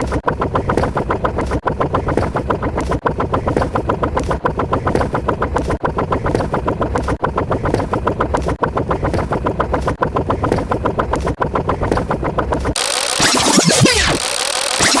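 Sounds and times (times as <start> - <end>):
rapid electronic sound effect: 0.0 - 1.0, 12.7 - 15.0.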